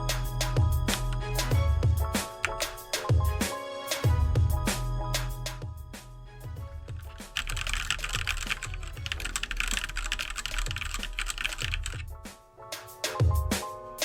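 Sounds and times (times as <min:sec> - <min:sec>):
background music: 0:00.0 - 0:14.0
mechanical keyboard typing: 0:02.4 - 0:02.8, 0:07.0 - 0:12.2.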